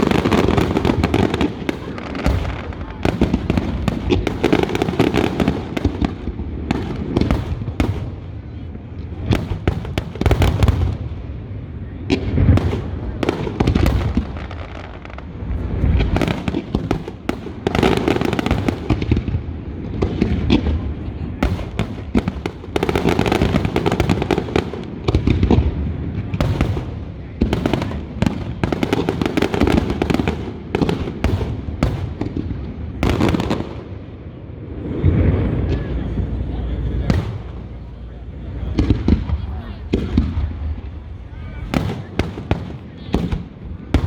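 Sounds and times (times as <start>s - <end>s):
fireworks booms and crackling bangs: 0.0s - 44.0s
low rumble: 34.5s - 41.8s.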